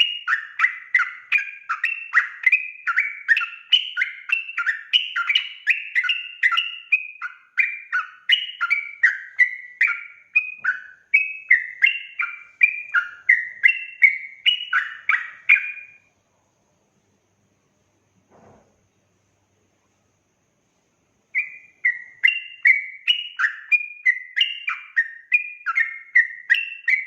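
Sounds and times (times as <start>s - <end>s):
bulbul singing bubbly chirps: 0.0s - 16.0s.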